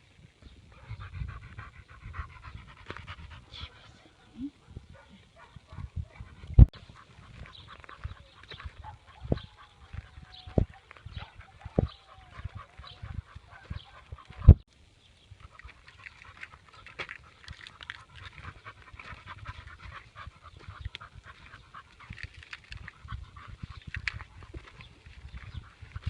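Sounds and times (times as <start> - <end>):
dog panting: 0.7 - 14.6, 15.4 - 26.0
small irregular clicks: 15.4 - 19.8, 20.7 - 26.0.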